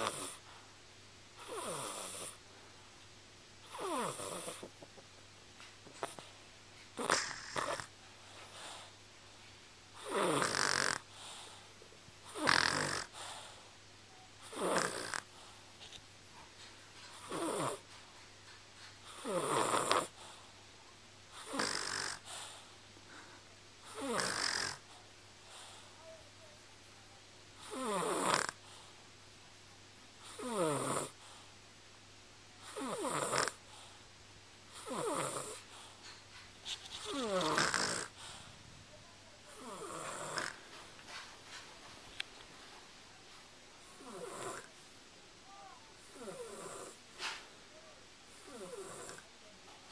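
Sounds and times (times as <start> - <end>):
loud snoring: 0.0 - 0.4, 1.4 - 2.4, 3.7 - 4.7, 7.0 - 7.9, 10.0 - 11.1, 12.3 - 13.4, 14.4 - 15.3, 17.1 - 17.8, 19.1 - 20.2, 21.4 - 22.4, 23.8 - 24.8, 27.6 - 28.6, 30.2 - 31.2, 32.6 - 33.6, 34.7 - 35.6, 37.0 - 38.2, 39.5 - 40.6, 43.9 - 44.7, 46.0 - 47.0, 48.3 - 49.2.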